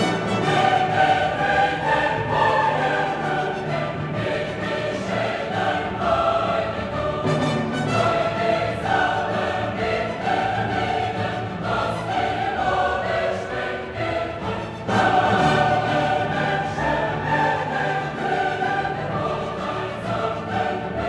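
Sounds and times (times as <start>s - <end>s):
choir singing with orchestra: 0.0s - 21.0s.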